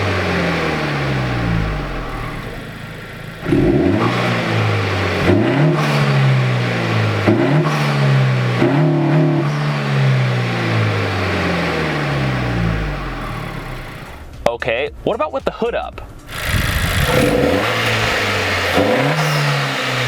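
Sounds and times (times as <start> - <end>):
car engine idling: 0.0 - 14.4, 16.2 - 20.0
car engine revving: 0.0 - 14.4, 16.2 - 20.0.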